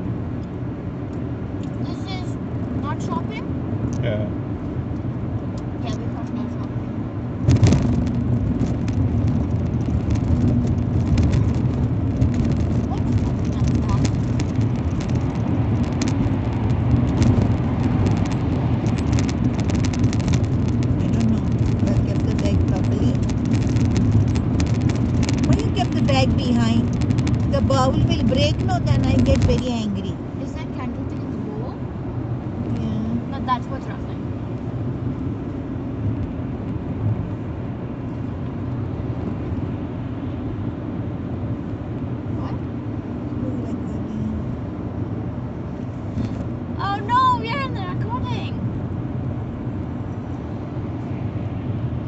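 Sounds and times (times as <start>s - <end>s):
car road and engine noise: 0.0s - 52.0s.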